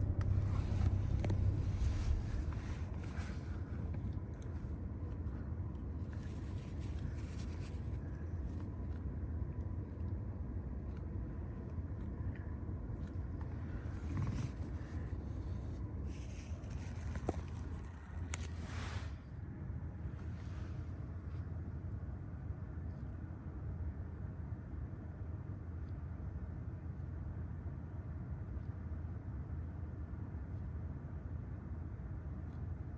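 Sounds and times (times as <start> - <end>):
car low rumble: 0.0 - 21.2.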